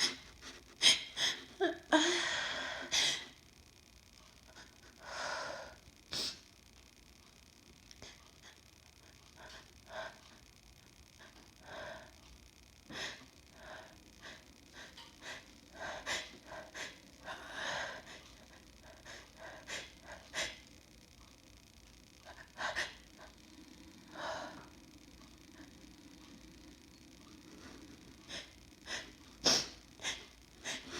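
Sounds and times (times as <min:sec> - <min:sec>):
woman sniffing and gasping: 0:05.2 - 0:06.4, 0:28.3 - 0:30.9.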